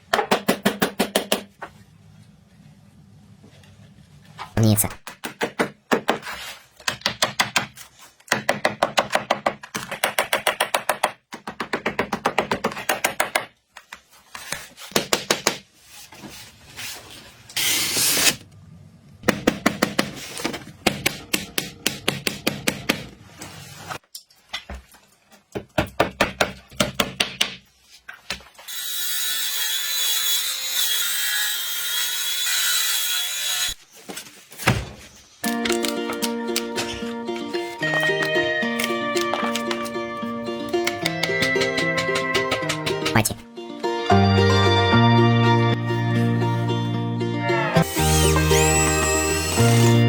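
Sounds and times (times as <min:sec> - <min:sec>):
knife chopping on wooden board: 0:40.8 - 0:43.4.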